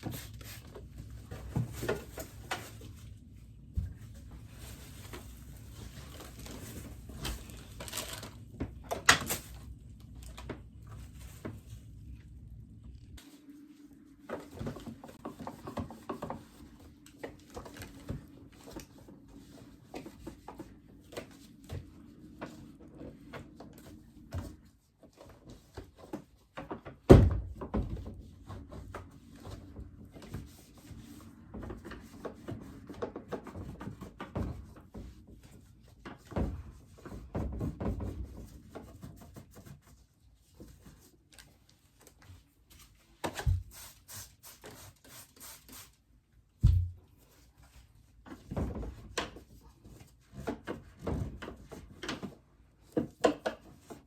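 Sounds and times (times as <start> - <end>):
low hum: 9.5 - 15.3.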